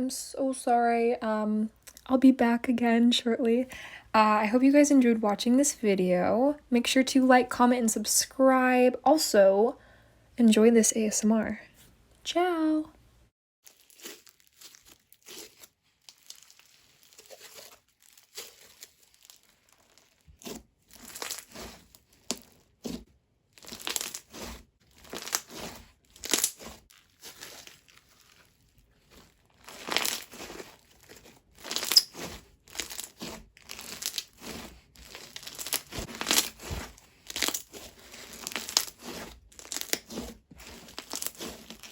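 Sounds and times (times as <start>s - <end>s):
slime squishing and popping: 23.6s - 41.9s.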